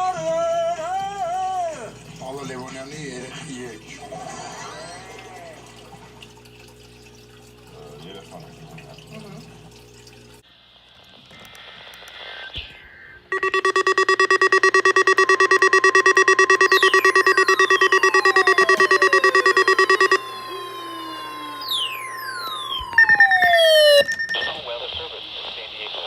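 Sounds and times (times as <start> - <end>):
pulsing multi-pitch alarm tone: 13.3 - 24.5
steady alarm tone: 13.3 - 24.5.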